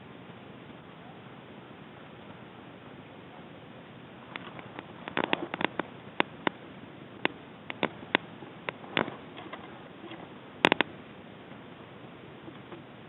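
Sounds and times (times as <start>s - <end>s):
low hiss: 0.0s - 13.0s
sharp clicks and snaps: 4.3s - 6.6s, 7.2s - 10.9s.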